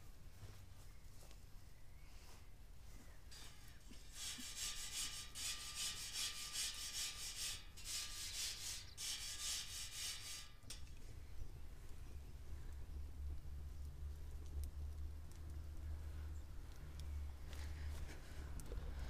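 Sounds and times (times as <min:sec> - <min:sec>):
rhythmic scraping strokes: 0:03.3 - 0:10.8.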